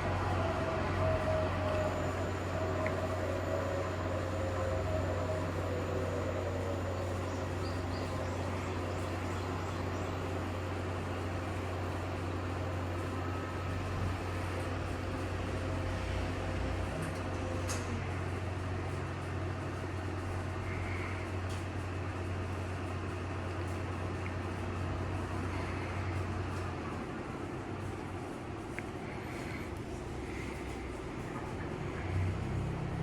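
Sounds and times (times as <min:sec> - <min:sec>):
washing machine humming: 0:00.0 - 0:33.0.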